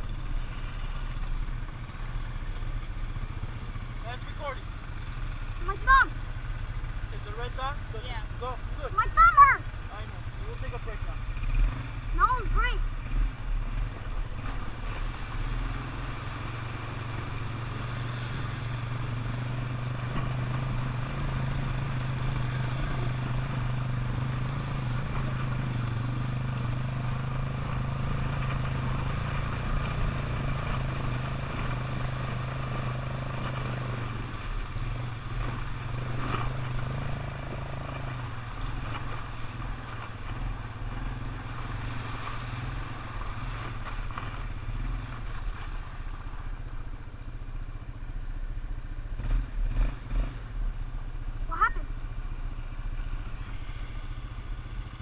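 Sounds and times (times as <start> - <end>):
atv engine running: 0.0 - 55.0.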